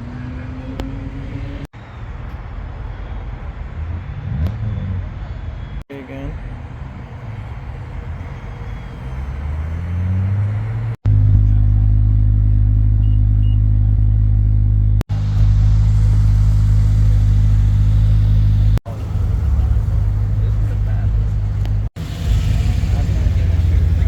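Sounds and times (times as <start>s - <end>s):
deep exhaust rumble: 3.0s - 24.0s
car engine running: 6.6s - 24.0s.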